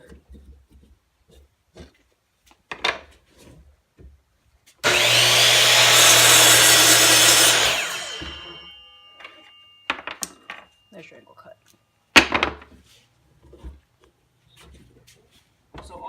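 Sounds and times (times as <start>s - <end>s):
miter saw cutting wood: 4.8s - 9.6s
saw blade winding down: 4.8s - 10.4s.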